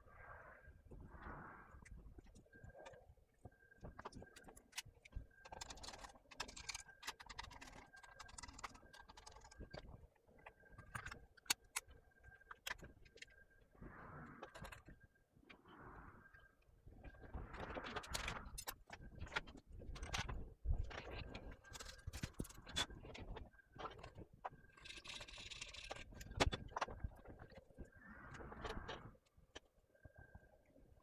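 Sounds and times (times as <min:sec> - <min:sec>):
laptop parts clicking and rustling: 0:02.2 - 0:13.4, 0:14.4 - 0:15.0, 0:17.4 - 0:27.8.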